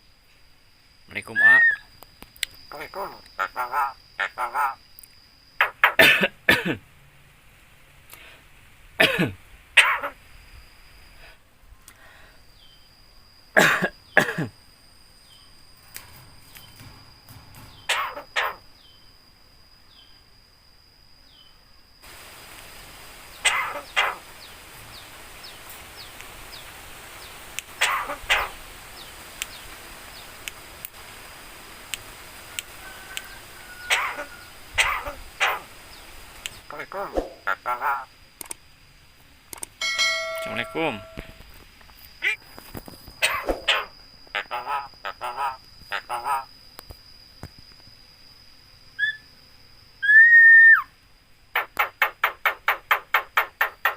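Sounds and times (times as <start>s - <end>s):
bird mimicking coughs: 5.6s - 6.8s, 9.0s - 10.2s, 13.6s - 14.5s, 17.9s - 18.6s, 23.4s - 24.2s, 27.8s - 28.5s, 33.9s - 35.6s, 43.2s - 43.9s.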